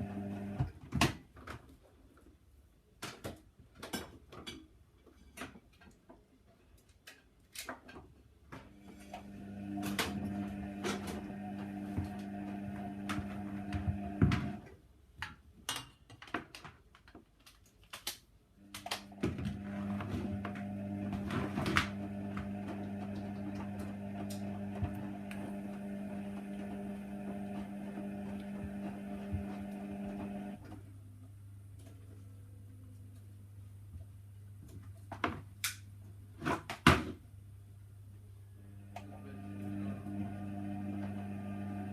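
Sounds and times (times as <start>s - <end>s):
washer drum motor humming: 0.0s - 0.8s, 8.8s - 14.7s, 18.6s - 36.3s, 37.3s - 41.9s.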